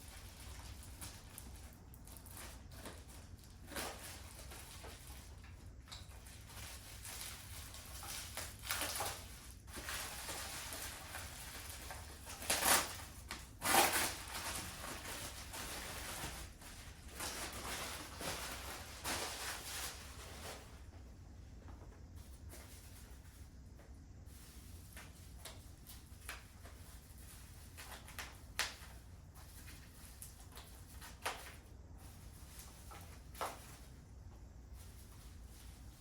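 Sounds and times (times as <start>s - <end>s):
packing material rustling: 0.0s - 20.9s.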